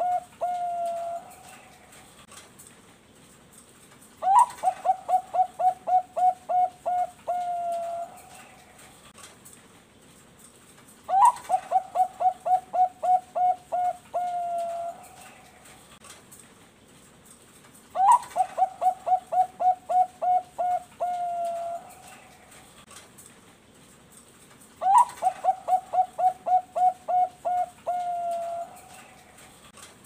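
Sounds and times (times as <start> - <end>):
dove cooing: 0.0 - 2.0, 4.2 - 8.8, 11.1 - 15.9, 17.9 - 22.7, 24.8 - 29.7.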